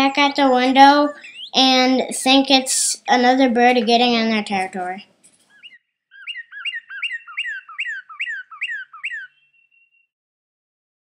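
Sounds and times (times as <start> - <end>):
cardinal whistling song: 1.1 - 1.6, 5.5 - 10.1.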